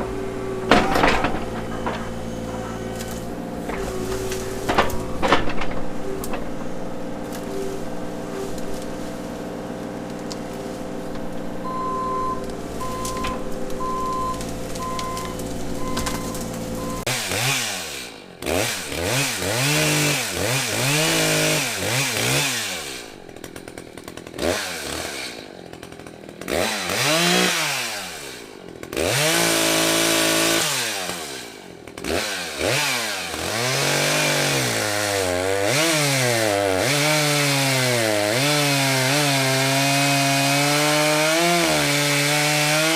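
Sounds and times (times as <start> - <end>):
chainsaw cutting wood: 0.0 - 42.9
short beeps: 11.6 - 17.1.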